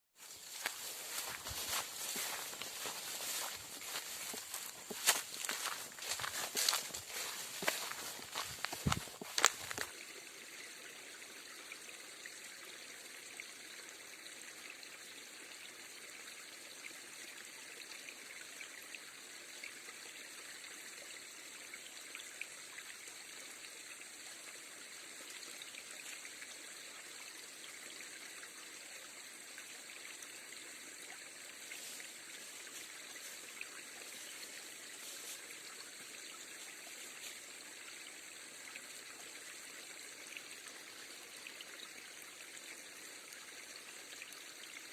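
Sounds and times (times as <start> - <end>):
stream water rushing: 0.2 - 10.6, 24.8 - 44.9.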